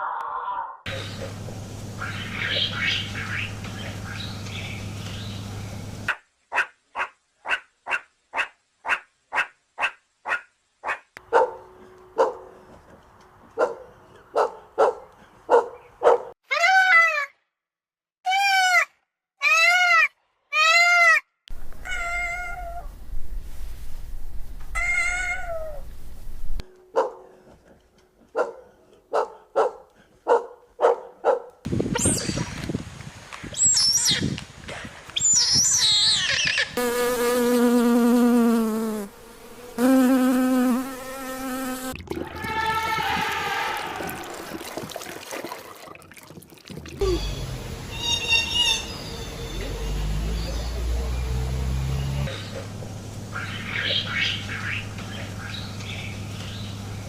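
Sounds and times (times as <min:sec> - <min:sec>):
cat meowing: 0:21.8 - 0:22.9, 0:24.8 - 0:25.8
wavering animal cries: 0:24.8 - 0:25.8.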